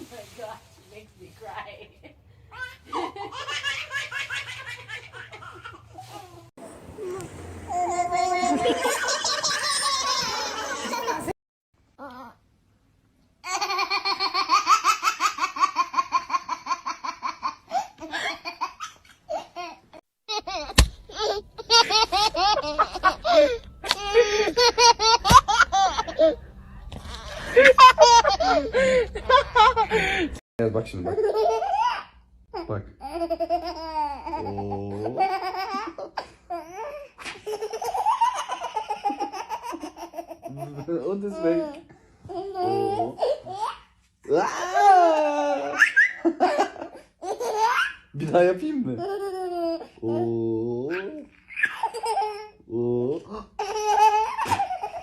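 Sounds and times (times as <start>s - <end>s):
baby laughing: 2.5s - 6.5s, 7.1s - 11.3s, 13.4s - 26.4s, 27.0s - 30.2s, 31.1s - 48.1s, 49.0s - 50.3s, 50.9s - 52.5s, 53.6s - 55.0s
baby laughing and squealing: 2.6s - 11.3s, 13.5s - 26.4s, 51.0s - 52.5s.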